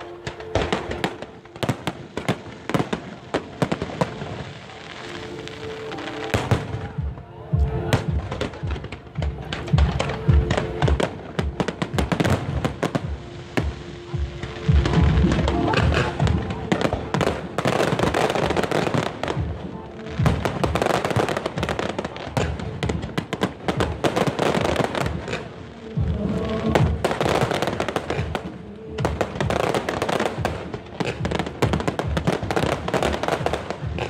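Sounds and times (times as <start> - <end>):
fireworks bursting and crackling: 0.0 - 34.0
music playing: 0.0 - 34.0.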